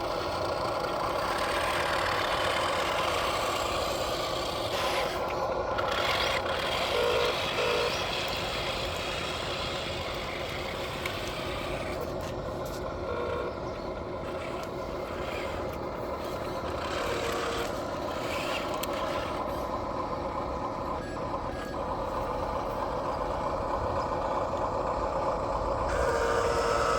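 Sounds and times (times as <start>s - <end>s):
rc truck engine-like drone: 0.0s - 26.9s.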